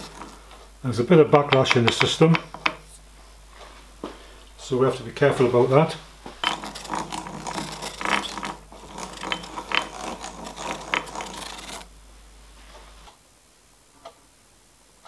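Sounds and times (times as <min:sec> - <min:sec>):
mechanical clicking and rubbing: 0:06.4 - 0:11.9.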